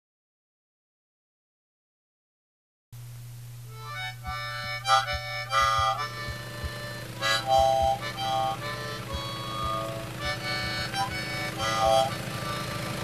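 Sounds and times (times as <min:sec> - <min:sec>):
steady low hum: 0:03.0 - 0:13.0
sustained reedy chords: 0:03.6 - 0:13.0
regular low beat: 0:03.7 - 0:13.0.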